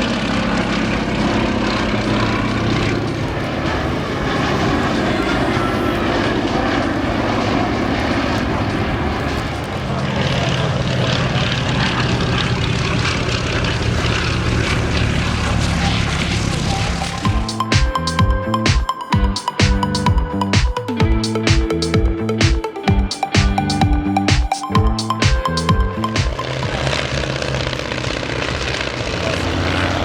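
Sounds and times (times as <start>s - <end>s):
propeller plane engine in flight: 0.0s - 17.5s, 25.8s - 30.0s.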